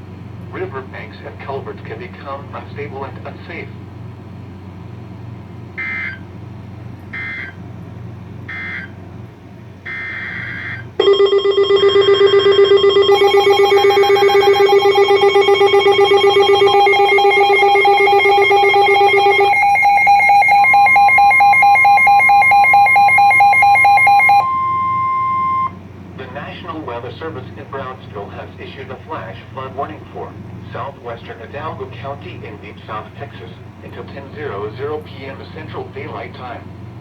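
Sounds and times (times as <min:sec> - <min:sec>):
loud pulsing alert tone: 0:11.0 - 0:25.7
steady single tone: 0:11.0 - 0:25.8.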